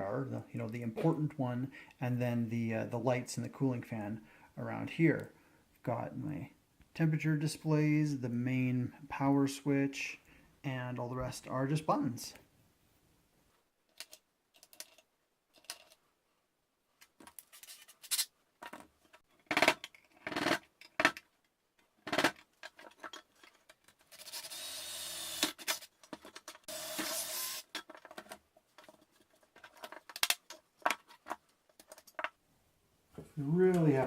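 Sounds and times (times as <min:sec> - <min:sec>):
parts clicking and knocking: 0:13.9 - 0:16.0, 0:18.6 - 0:24.6, 0:25.2 - 0:32.4
electric drill boring sheet metal: 0:24.2 - 0:25.5, 0:26.7 - 0:27.6.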